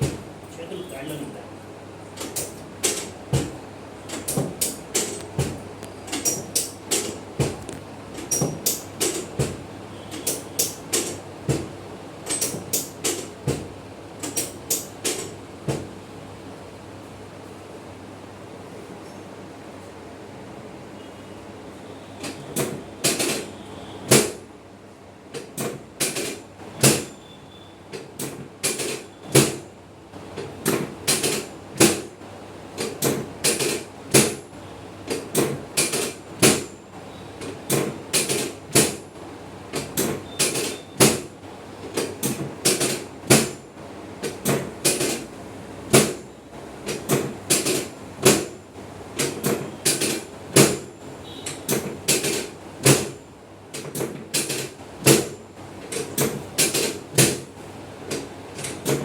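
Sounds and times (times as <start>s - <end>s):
sharp knocks or slaps: 3.3s - 3.6s, 7.0s - 7.7s.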